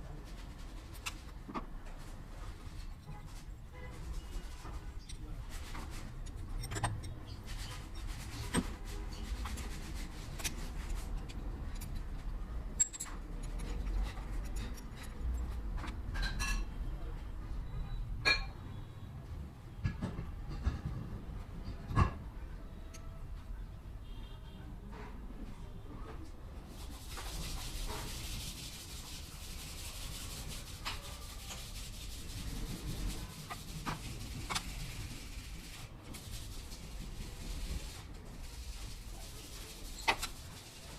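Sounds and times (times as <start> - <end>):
scraping and rubbing metal parts: 0.2 - 16.9, 26.7 - 40.9.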